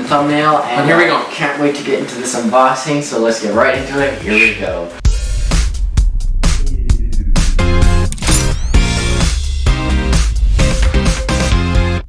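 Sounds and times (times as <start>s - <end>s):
electronic music with heavy bass: 3.8s - 11.9s.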